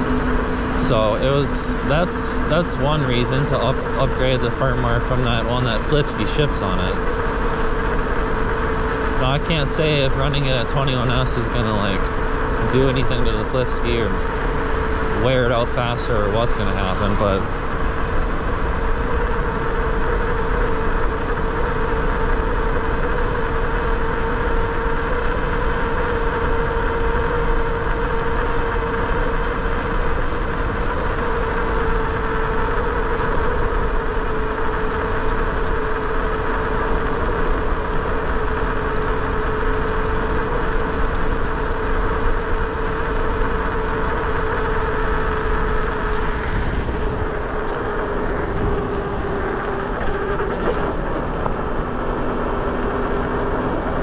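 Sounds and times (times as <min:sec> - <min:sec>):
electric motor whining: 0:00.0 - 0:54.0
wind noise: 0:29.7 - 0:52.7.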